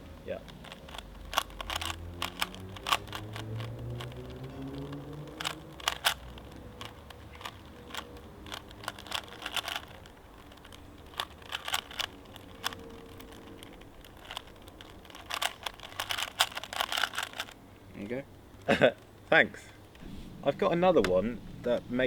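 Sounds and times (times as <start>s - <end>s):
puzzle cube layers clicking: 0.4s - 17.6s.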